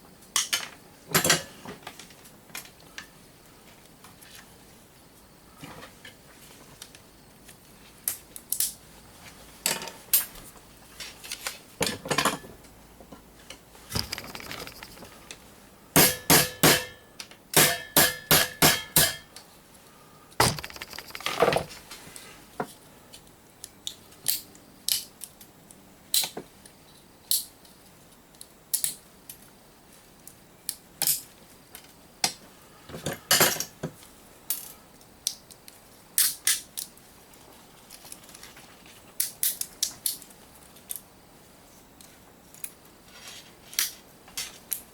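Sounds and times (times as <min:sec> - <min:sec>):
metallic clinks: 0:13.9 - 0:15.3, 0:20.4 - 0:21.8.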